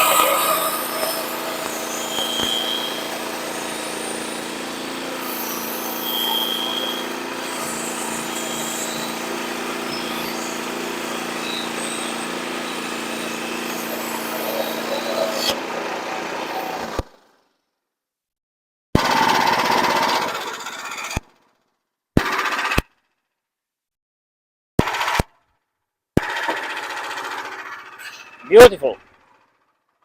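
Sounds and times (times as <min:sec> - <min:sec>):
band blade sawing log: 0:00.0 - 0:15.6
sawmill engine running: 0:00.0 - 0:17.0, 0:26.3 - 0:29.1.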